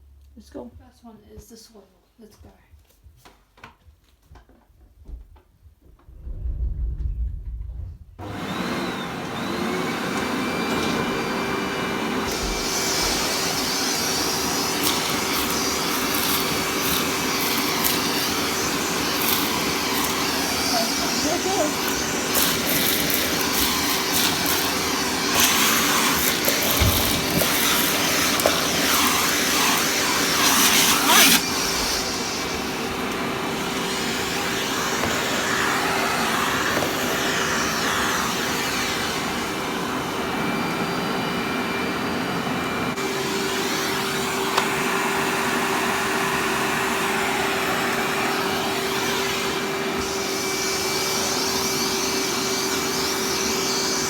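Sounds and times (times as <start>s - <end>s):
vacuum cleaner running: 8.2s - 54.0s.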